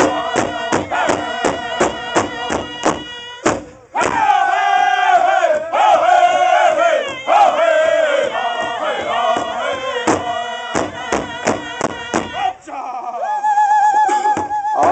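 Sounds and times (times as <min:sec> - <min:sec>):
loud drumbeats: 0:00.0 - 0:04.5, 0:07.0 - 0:12.5
drum group singing: 0:00.0 - 0:12.6.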